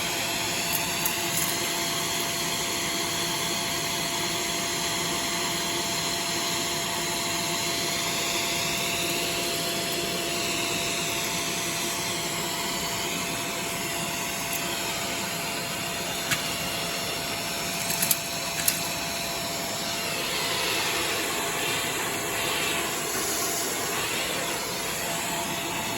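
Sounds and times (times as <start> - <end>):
vacuum cleaner running: 0.0 - 25.9
debris clicking in vacuum: 0.6 - 1.6, 17.8 - 19.0.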